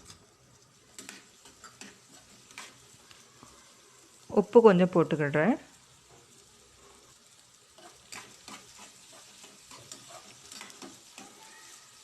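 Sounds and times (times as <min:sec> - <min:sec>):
spatula scraping pan: 0:00.0 - 0:03.6, 0:06.2 - 0:12.0
faint sizzle: 0:00.0 - 0:12.0.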